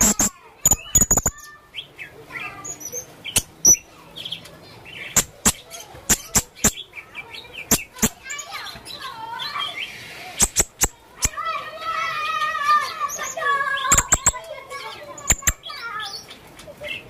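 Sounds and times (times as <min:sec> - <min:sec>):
parrot sharp clicking chips: 0:00.0 - 0:01.5, 0:03.3 - 0:03.8, 0:05.1 - 0:06.8, 0:07.6 - 0:08.4, 0:10.4 - 0:11.4, 0:13.9 - 0:14.4, 0:15.2 - 0:15.7
soft high twittering: 0:00.0 - 0:01.5, 0:07.7 - 0:11.4.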